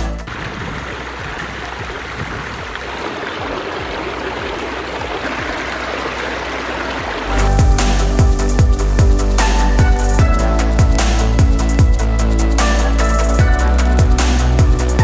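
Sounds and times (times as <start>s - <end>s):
electronic music: 0.0s - 15.0s
water splashing over stones: 0.2s - 9.2s.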